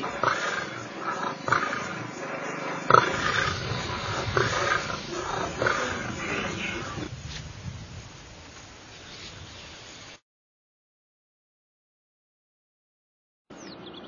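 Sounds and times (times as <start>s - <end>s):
lions growling and snarling: 0.0s - 7.1s.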